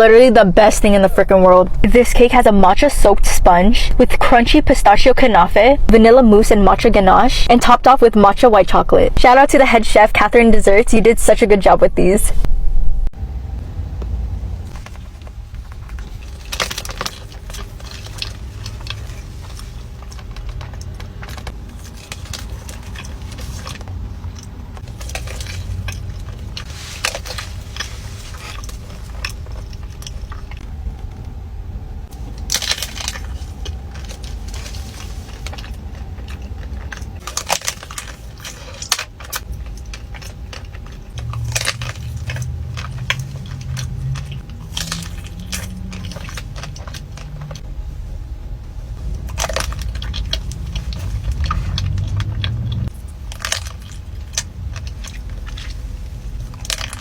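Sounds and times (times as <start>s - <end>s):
low rumble: 11.0s - 57.0s
crisp crunches: 14.7s - 31.3s, 32.1s - 48.2s, 48.9s - 57.0s.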